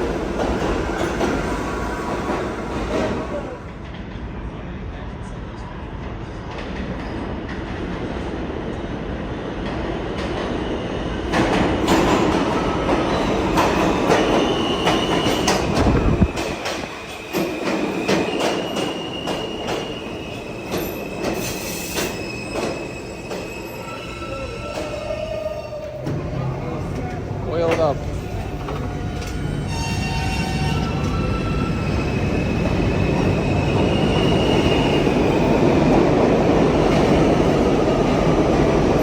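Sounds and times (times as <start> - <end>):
subway train running: 0.0 - 39.0
high-pitched wheel squeal: 18.1 - 26.0.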